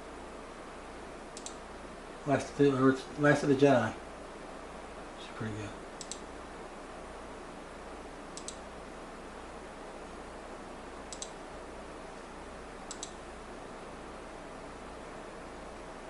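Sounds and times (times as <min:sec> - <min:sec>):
computers hissing and humming: 0:00.0 - 0:16.0
computer mouse double clicks: 0:01.4 - 0:01.6, 0:08.4 - 0:08.6, 0:11.1 - 0:11.4, 0:12.9 - 0:13.2.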